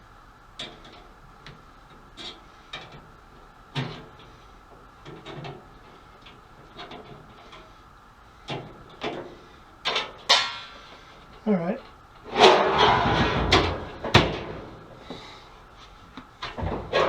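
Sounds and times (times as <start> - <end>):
clicks and clunks of parts and tools: 8.5 - 15.2.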